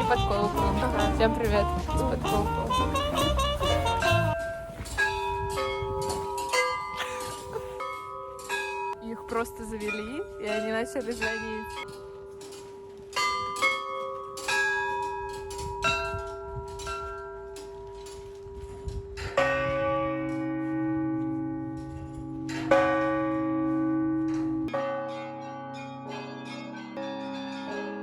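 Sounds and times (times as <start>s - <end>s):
large bell striking: 0.0s - 28.0s
small church bells ringing: 0.0s - 28.0s.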